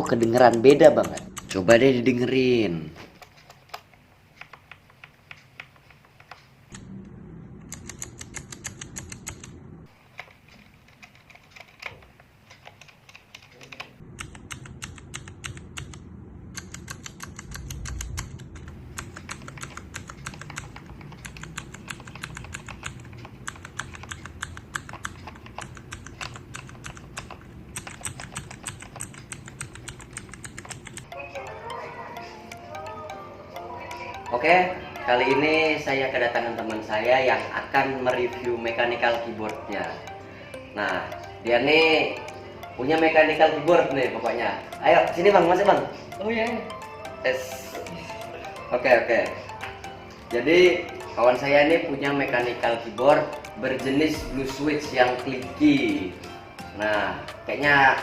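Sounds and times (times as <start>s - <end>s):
faint music: 0.0s - 8.0s, 17.6s - 58.0s
loud sharp keyboard clicks: 0.1s - 1.8s, 7.6s - 31.2s
soft muted keystrokes: 7.6s - 9.6s, 10.2s - 16.0s, 16.6s - 31.5s.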